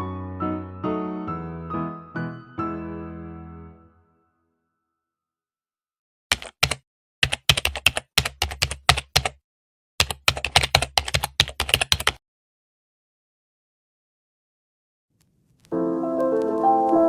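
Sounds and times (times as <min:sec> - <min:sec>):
keyboard key clicks: 0:06.3 - 0:09.4.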